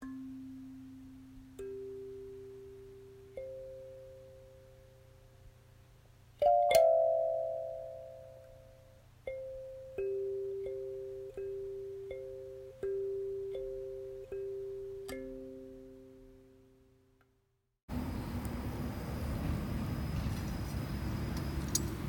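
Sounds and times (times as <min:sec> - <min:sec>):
slow bell-like music: 0:00.0 - 0:05.2, 0:06.4 - 0:16.5.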